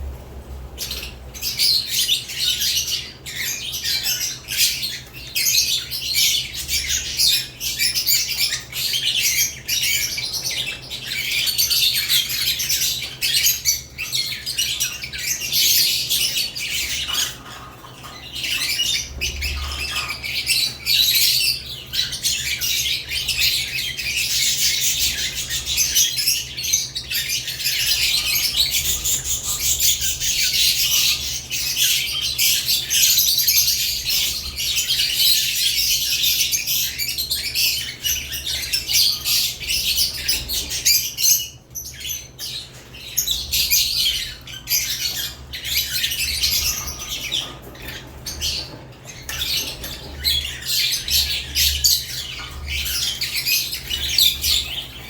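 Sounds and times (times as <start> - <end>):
steady low hum: 0.0 - 3.4
lovebirds chattering and squawking: 0.0 - 55.0.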